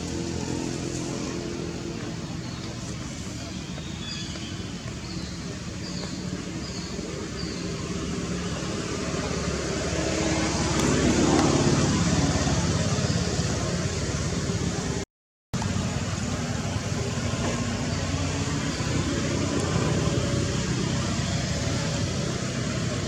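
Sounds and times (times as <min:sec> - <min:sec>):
vehicle passing: 0:00.0 - 0:03.7, 0:07.0 - 0:15.0.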